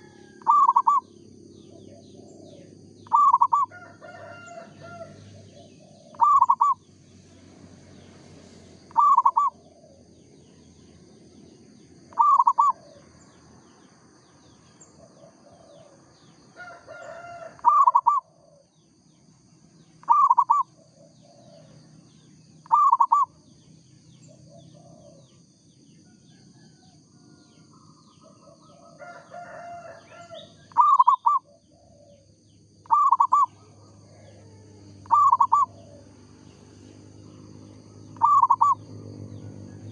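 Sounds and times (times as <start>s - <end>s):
dove cooing: 0.0s - 6.8s, 8.9s - 10.1s, 12.1s - 13.2s, 14.9s - 18.7s, 20.0s - 21.9s, 22.6s - 23.4s, 24.2s - 25.4s, 28.2s - 39.0s
small birds chirping faintly: 0.0s - 39.9s.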